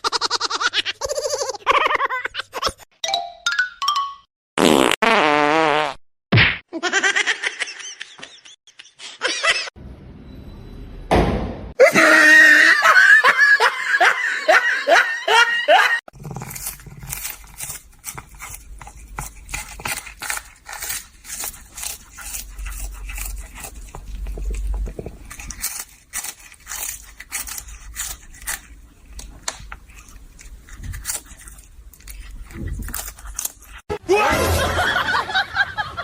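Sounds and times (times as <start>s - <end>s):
pet chewing crunchy food: 16.1s - 33.9s.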